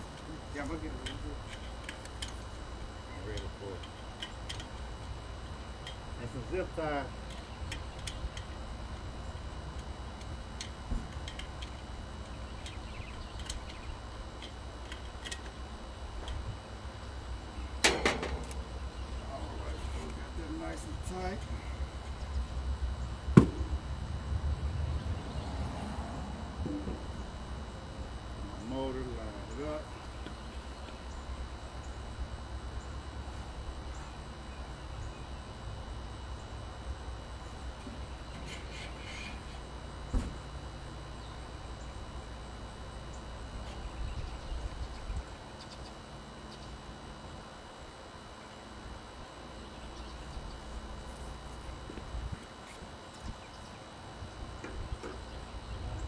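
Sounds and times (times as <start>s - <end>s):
low unsteady rumble: 15.6s - 45.4s
low rumble: 22.2s - 27.7s.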